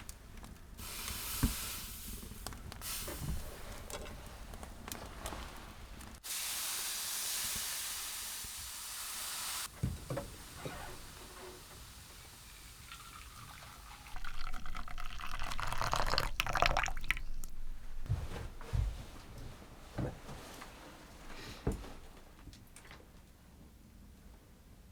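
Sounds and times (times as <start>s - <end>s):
crackling and rustling: 0.0s - 6.2s
liquid pouring: 12.5s - 17.6s.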